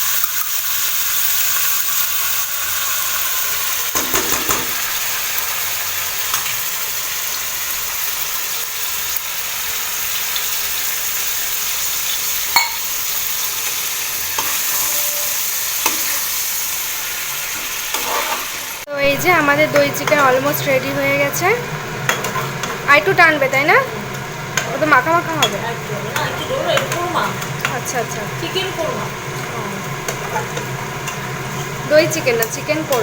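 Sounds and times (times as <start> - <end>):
food sizzling in a pan: 0.0 - 33.0
spoon stirring and scraping: 14.4 - 16.4, 17.9 - 18.5, 22.0 - 22.8.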